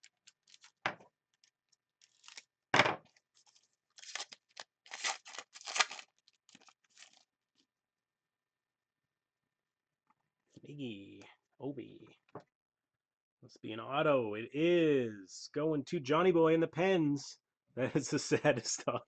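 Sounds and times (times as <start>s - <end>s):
foil wrapper rustling and tearing: 0.0s - 0.8s, 1.4s - 2.5s, 3.3s - 7.3s.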